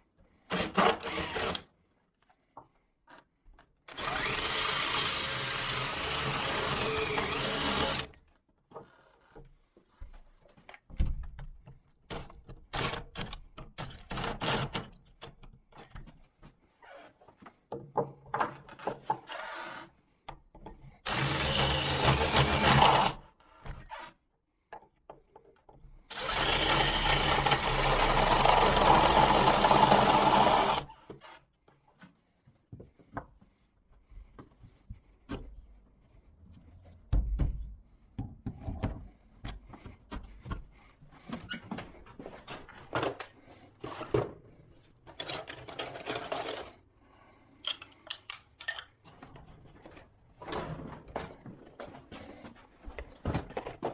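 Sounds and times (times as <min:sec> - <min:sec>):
power drill running: 0:00.5 - 0:01.6, 0:03.9 - 0:08.2, 0:21.0 - 0:23.2, 0:26.1 - 0:31.0
metal lock parts clicking: 0:47.6 - 0:49.0.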